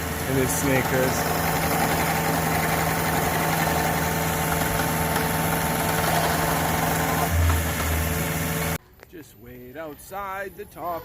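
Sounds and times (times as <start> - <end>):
engine idling hum: 0.0 - 8.8.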